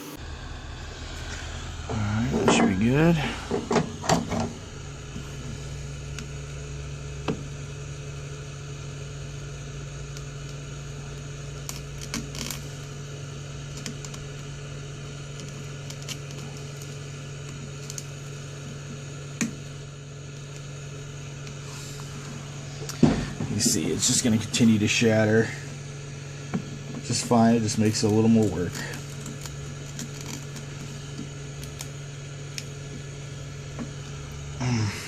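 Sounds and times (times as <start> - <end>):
heat gun humming: 0.0 - 35.0
glass clicks and cracks: 11.6 - 12.6, 29.0 - 30.6.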